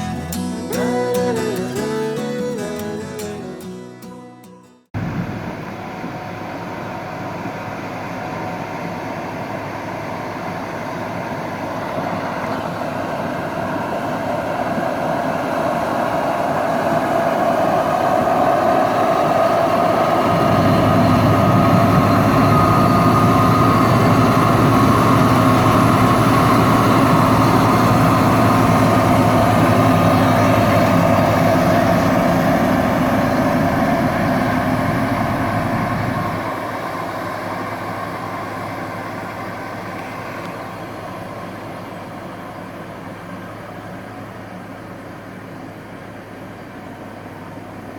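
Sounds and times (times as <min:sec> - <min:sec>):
deeper engine note: 0:00.0 - 0:04.2, 0:05.0 - 0:44.5
farm machinery engine running: 0:00.0 - 0:04.4, 0:05.0 - 0:47.9.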